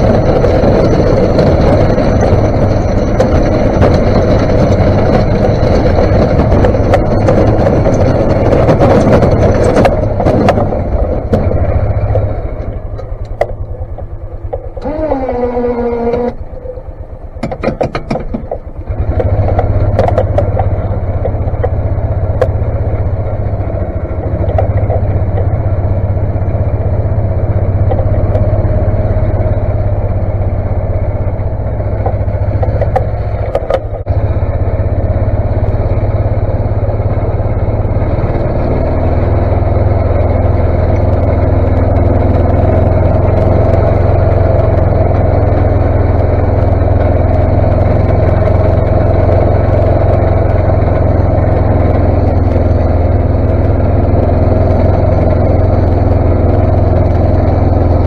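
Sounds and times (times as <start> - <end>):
snowplow engine running: 0.0 - 58.0.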